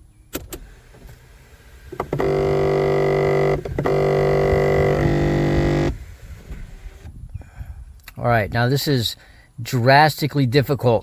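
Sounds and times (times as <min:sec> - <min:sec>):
low buzzing drone: 0:00.6 - 0:07.1.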